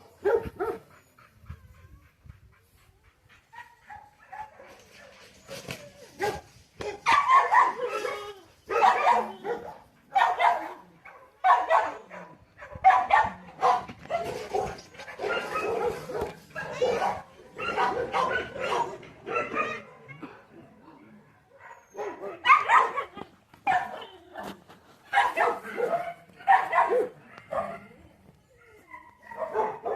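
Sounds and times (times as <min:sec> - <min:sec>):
dog barking: 0:00.2 - 0:00.8, 0:06.2 - 0:19.8, 0:21.6 - 0:23.1, 0:23.7 - 0:24.0, 0:25.1 - 0:27.9, 0:29.0 - 0:29.9.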